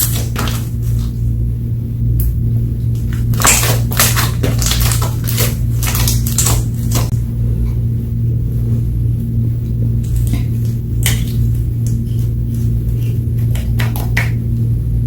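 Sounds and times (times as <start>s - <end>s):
slime squished by hand: 0.0s - 1.2s, 3.0s - 7.1s, 10.0s - 14.5s
steady low hum: 0.0s - 15.0s.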